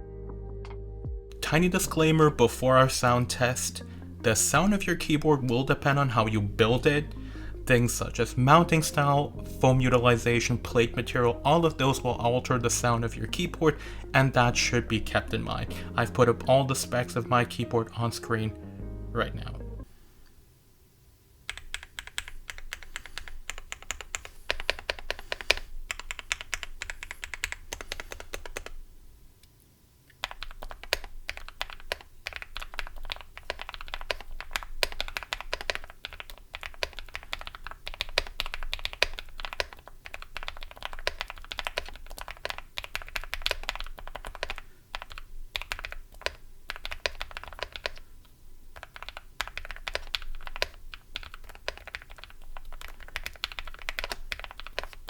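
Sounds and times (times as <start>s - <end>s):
mechanical keyboard typing: 21.5s - 28.8s, 30.2s - 48.0s, 48.7s - 55.0s.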